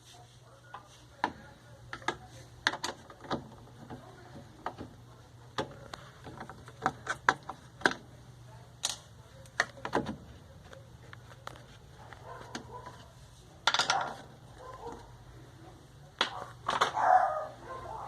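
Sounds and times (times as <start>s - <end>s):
tools clicking and knocking: 1.2s - 8.1s, 13.6s - 15.0s.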